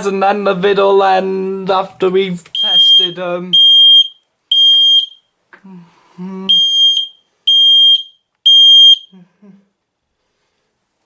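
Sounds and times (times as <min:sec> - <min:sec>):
person speaking: 0:00.0 - 0:03.6, 0:05.6 - 0:07.1
smoke alarm beeps: 0:02.6 - 0:05.3, 0:06.5 - 0:09.2.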